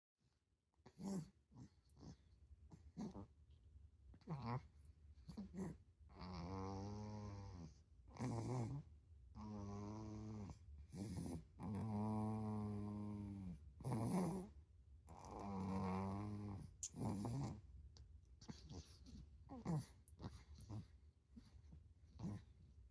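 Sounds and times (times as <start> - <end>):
loud snoring: 6.2 - 8.8, 9.4 - 14.5, 15.1 - 17.6.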